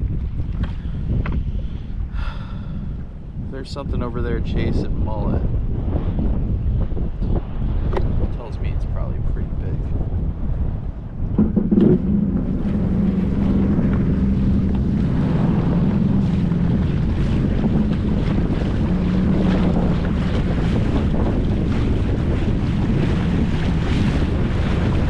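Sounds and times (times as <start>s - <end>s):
wind buffeting microphone: 0.0s - 25.0s
boat motor humming: 9.2s - 25.0s
water rushing past: 11.0s - 25.0s.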